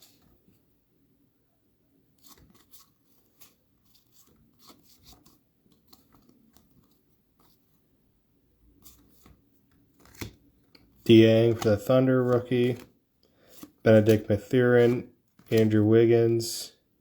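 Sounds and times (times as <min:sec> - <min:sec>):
trading cards and foil pack rubbing: 0:11.0 - 0:12.8.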